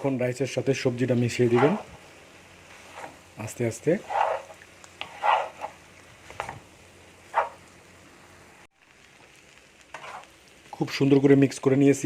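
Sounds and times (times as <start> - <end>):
spatula scraping a pan: 1.2 - 2.0, 2.6 - 6.6, 7.3 - 7.6, 9.9 - 10.4.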